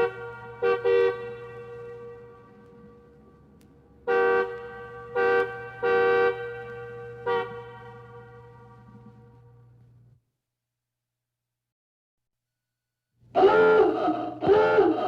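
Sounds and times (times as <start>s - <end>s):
car horn honking: 0.0s - 9.8s, 13.4s - 15.0s
steady low hum: 0.0s - 10.2s.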